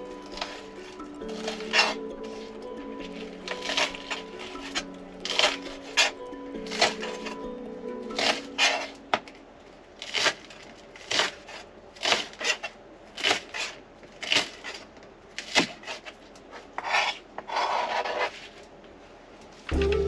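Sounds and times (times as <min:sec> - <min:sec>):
scraping strokes on wood: 0:15.5 - 0:18.6.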